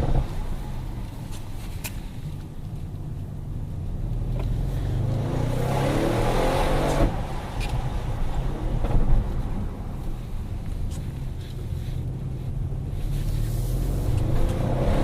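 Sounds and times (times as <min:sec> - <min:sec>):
exhaust cracks: 0:00.0 - 0:15.0
car engine accelerating hard: 0:03.9 - 0:10.3, 0:12.2 - 0:15.0.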